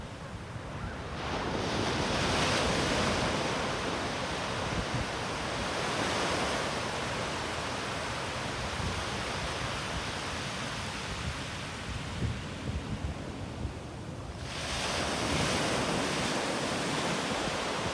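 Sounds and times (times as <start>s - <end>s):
wind rumble on microphone: 8.5s - 17.9s.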